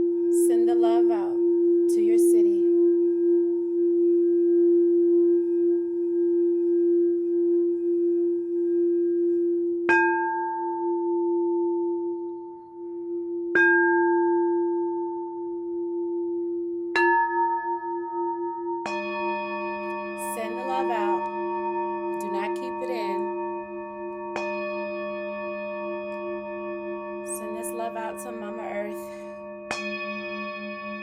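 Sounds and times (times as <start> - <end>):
singing bowl low hum: 0.0 - 31.0
singing bowl strikes ringing: 9.9 - 31.0.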